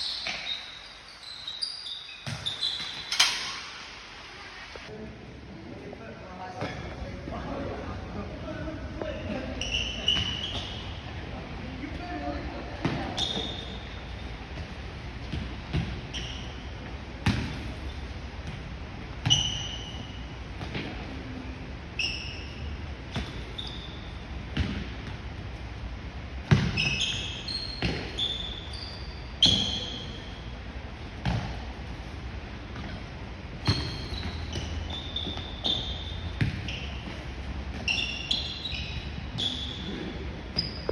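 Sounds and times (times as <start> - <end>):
shoes squeaking on court: 0.0 - 4.0, 9.0 - 11.2, 11.8 - 21.3, 21.9 - 25.2, 26.5 - 30.6, 32.6 - 40.9.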